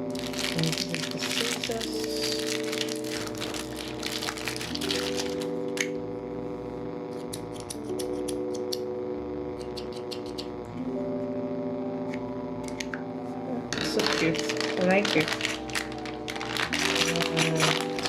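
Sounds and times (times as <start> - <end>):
background music of held chords: 0.0 - 18.0
scissors clicking: 7.2 - 8.8, 9.6 - 10.5.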